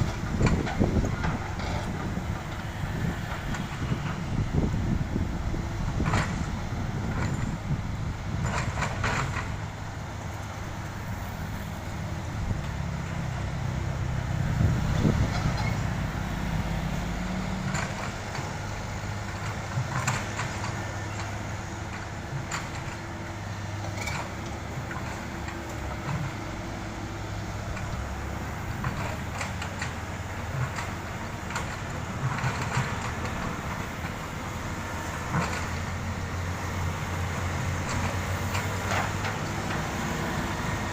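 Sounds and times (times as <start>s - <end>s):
diesel construction machinery running: 0.0s - 40.9s
short knocks and clanks: 8.4s - 9.6s, 35.0s - 35.9s.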